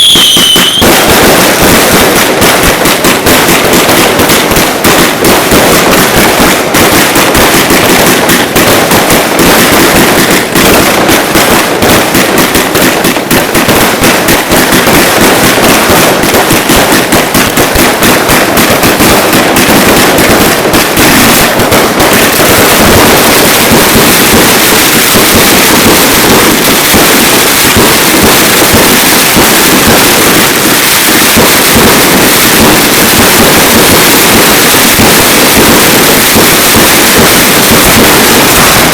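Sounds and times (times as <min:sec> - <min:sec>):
firecrackers banging: 0:00.0 - 0:38.9.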